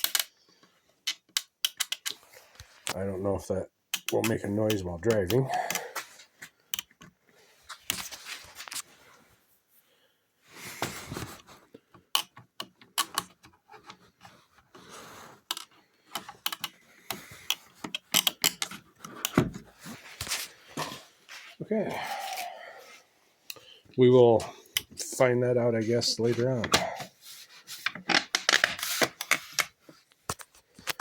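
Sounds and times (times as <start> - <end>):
plastic pieces clicking: 0.0 - 0.4, 1.0 - 2.2, 12.1 - 13.4, 15.5 - 19.4.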